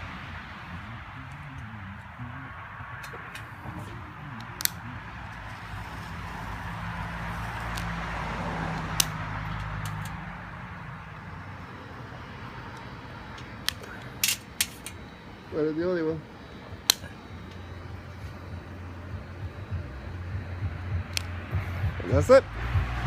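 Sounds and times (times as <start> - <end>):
low engine hum: 0.0 - 23.0
sharp clicks: 8.7 - 10.2, 16.8 - 17.6, 21.0 - 21.4.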